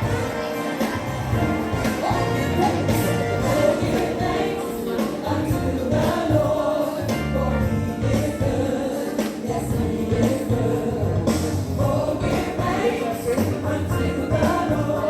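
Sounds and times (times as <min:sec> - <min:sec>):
gospel choir singing: 0:00.0 - 0:15.0
bass line: 0:01.1 - 0:04.4, 0:05.3 - 0:08.6, 0:09.5 - 0:12.8.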